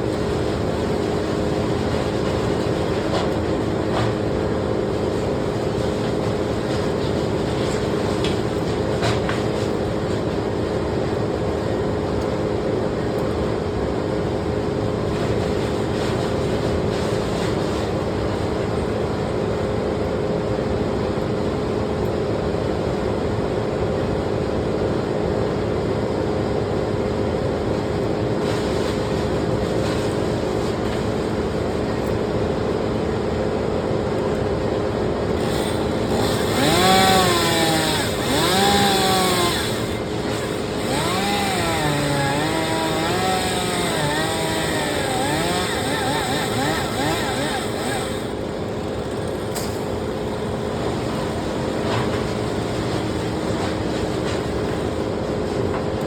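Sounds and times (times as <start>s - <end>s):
engine running steadily: 26.6s - 56.0s.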